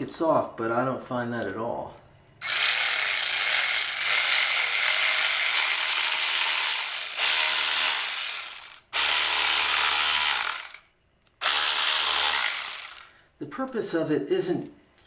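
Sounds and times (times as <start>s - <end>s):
cordless ratchet running: 2.4s - 10.8s, 11.4s - 13.1s.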